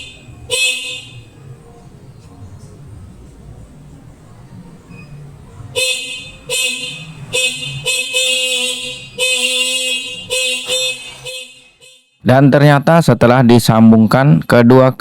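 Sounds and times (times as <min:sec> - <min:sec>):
electric horn blasts: 0:00.0 - 0:01.3, 0:05.8 - 0:12.0.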